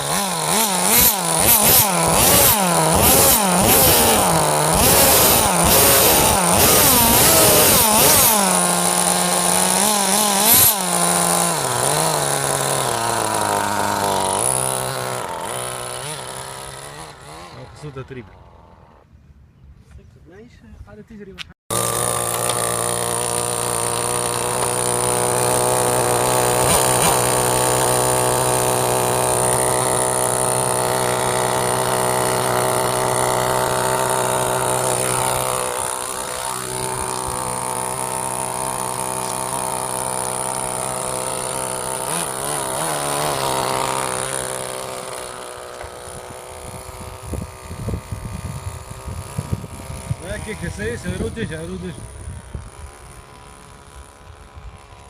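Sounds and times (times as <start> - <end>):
small buzzy engine running: 0.0 - 19.1, 21.7 - 55.0.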